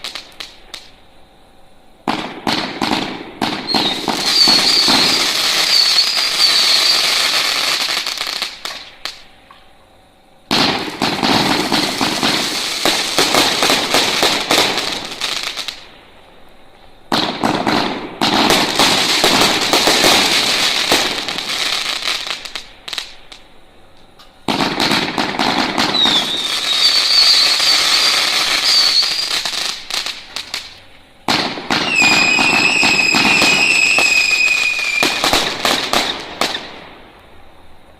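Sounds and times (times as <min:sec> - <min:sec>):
firework crackling shots: 0:00.0 - 0:01.0, 0:02.0 - 0:09.3, 0:10.5 - 0:16.0, 0:17.1 - 0:23.4, 0:24.4 - 0:37.2
rising firework whistles: 0:02.1 - 0:09.4, 0:10.5 - 0:15.9, 0:17.1 - 0:23.4, 0:24.5 - 0:37.2
shrieking firework whistle: 0:03.7 - 0:09.2, 0:25.8 - 0:30.7, 0:31.7 - 0:36.7.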